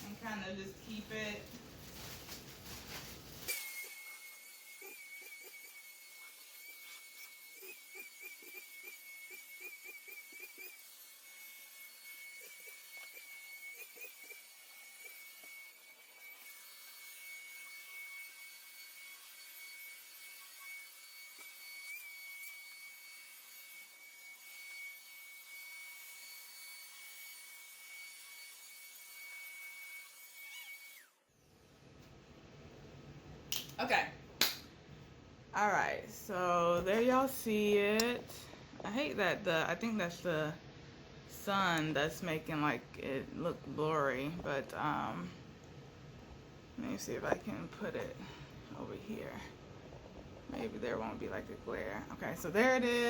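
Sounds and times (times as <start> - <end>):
small electric motor whining: 3.3 - 31.7.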